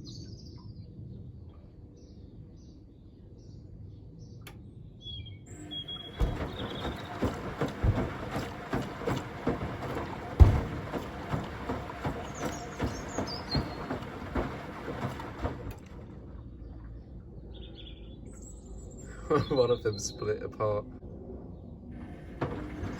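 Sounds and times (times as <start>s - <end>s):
washing machine drum thudding: 5.5s - 16.0s, 22.0s - 22.9s.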